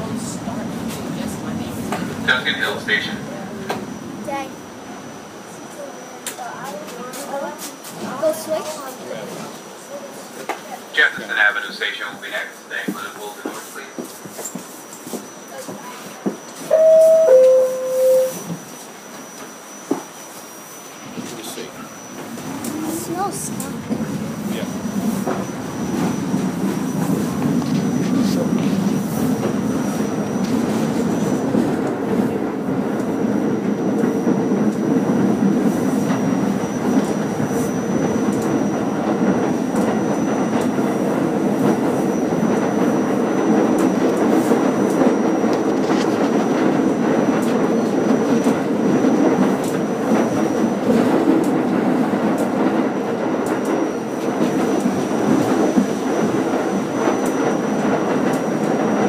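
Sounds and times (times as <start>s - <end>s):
subway car rumble: 0.0s - 59.0s
thin high whine: 16.7s - 18.8s.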